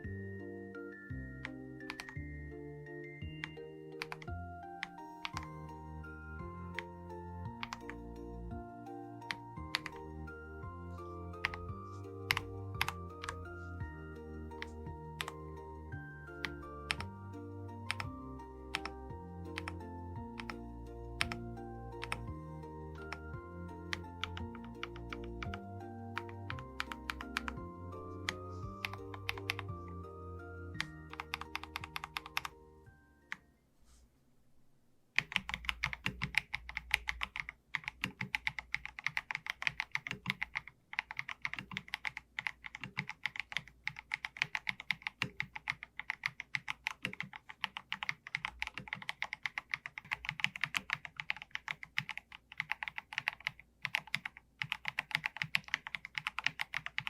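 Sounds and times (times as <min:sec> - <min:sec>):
background music: 0:00.0 - 0:33.7
rapid mechanical keyboard typing: 0:01.9 - 0:02.2, 0:04.0 - 0:05.5, 0:07.6 - 0:08.0, 0:09.2 - 0:10.0, 0:11.3 - 0:13.5, 0:14.5 - 0:15.4, 0:16.3 - 0:17.1, 0:17.8 - 0:20.6, 0:21.2 - 0:22.4, 0:23.0 - 0:29.7, 0:30.8 - 0:32.6, 0:35.2 - 0:57.0.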